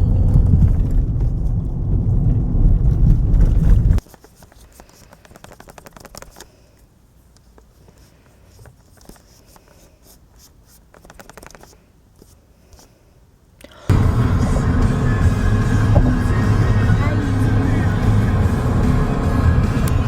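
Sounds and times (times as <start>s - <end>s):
low hum: 0.0s - 4.0s, 13.9s - 20.0s
faint rapid clicking and scratching: 3.0s - 12.9s.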